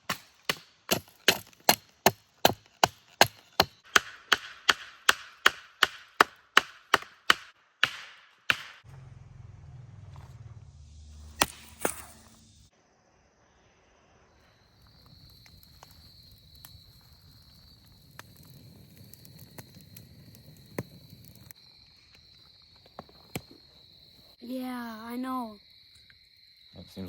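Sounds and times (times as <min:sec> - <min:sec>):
sharp knocks: 0:00.1 - 0:08.8
low rumble: 0:08.9 - 0:12.7.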